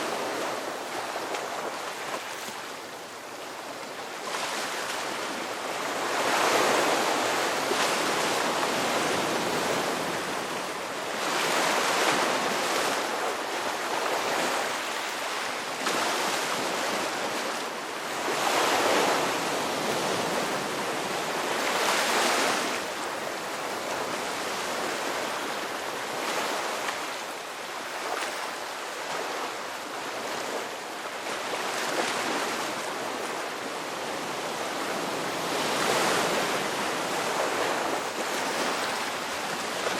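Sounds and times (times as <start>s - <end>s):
waves breaking on shore: 0.0s - 39.9s.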